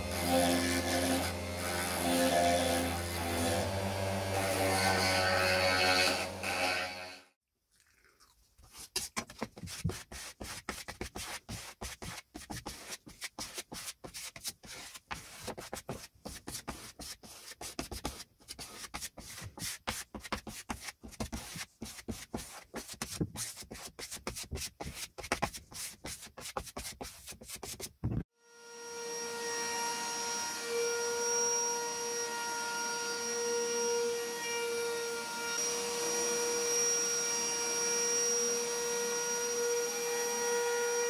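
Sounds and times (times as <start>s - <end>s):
hand sanding strokes: 8.6s - 28.0s.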